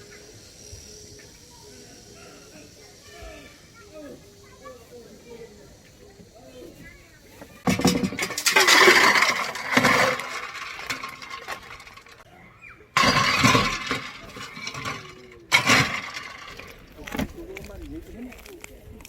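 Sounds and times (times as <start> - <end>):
objects clattering and clinking: 7.4 - 18.6.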